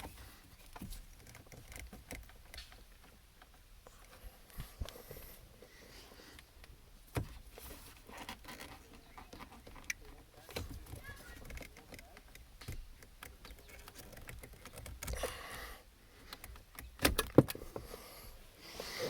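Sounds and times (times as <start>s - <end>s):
plastic trim clicking and rattling: 0.0s - 4.1s, 8.1s - 15.6s, 16.2s - 17.8s.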